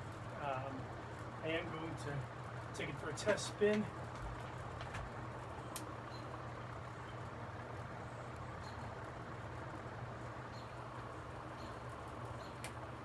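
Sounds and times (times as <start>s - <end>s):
fan motor humming: 0.0s - 6.8s.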